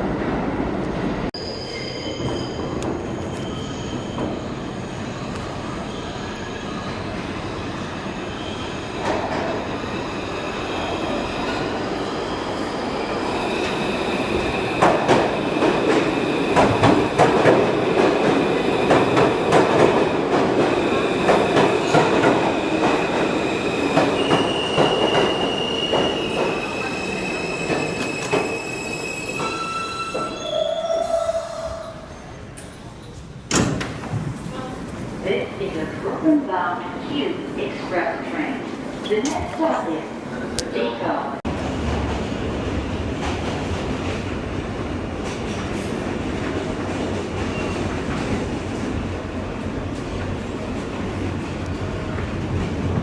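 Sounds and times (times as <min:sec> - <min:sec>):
train wheels squealing: 0:01.4 - 0:07.0, 0:23.5 - 0:32.6.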